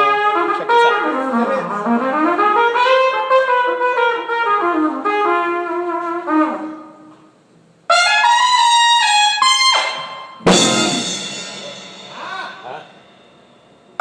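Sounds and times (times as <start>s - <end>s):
solo trumpet melody: 0.0s - 7.2s, 7.9s - 12.1s
loud ringing hit: 10.4s - 14.0s.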